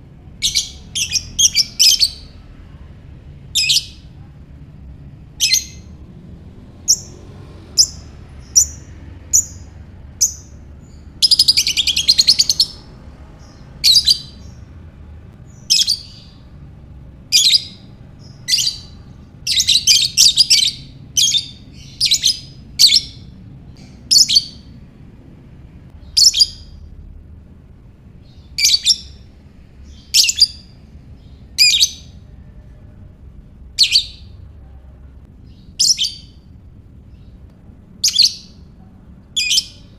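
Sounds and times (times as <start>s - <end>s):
lovebird chirping and trilling: 0.4s - 2.5s, 3.5s - 4.2s, 5.2s - 5.9s, 6.8s - 14.7s, 15.4s - 16.5s, 17.3s - 24.8s, 26.0s - 26.9s, 28.2s - 32.2s, 33.7s - 34.4s, 35.5s - 37.4s, 38.0s - 39.9s.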